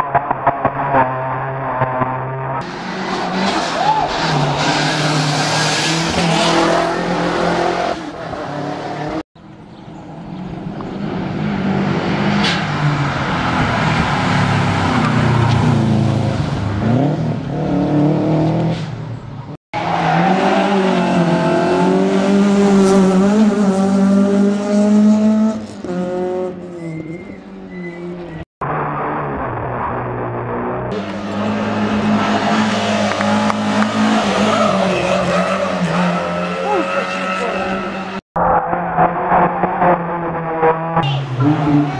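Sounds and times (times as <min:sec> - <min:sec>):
rally car engines revving: 0:00.0 - 0:41.9
tyre squeal: 0:26.6 - 0:28.4.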